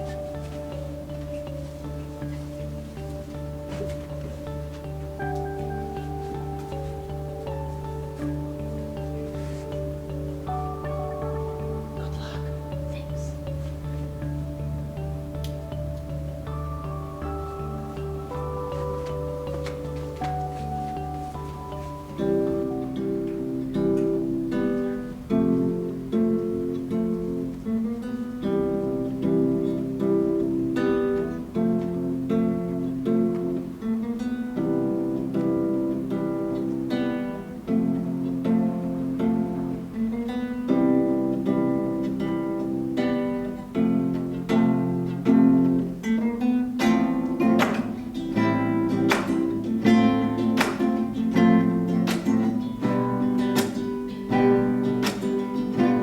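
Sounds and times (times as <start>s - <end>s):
acoustic guitar strumming chords: 0.0s - 56.0s.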